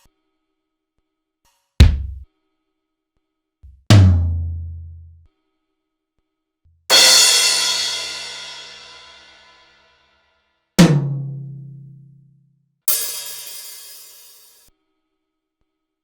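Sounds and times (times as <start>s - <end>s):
low-pitched drum hit: 1.8s - 2.2s, 3.7s - 5.0s
bright cymbal hit: 6.9s - 9.6s, 12.9s - 14.6s.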